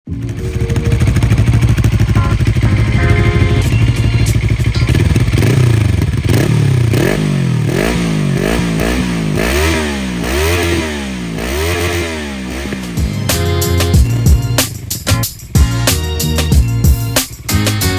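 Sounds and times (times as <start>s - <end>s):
motorcycle engine idling and revving: 0.0s - 17.9s.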